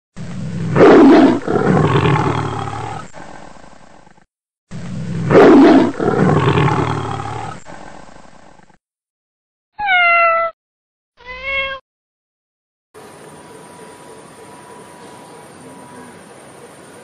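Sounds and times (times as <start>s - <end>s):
big cat roaring: 0.2s - 3.5s, 4.8s - 8.7s.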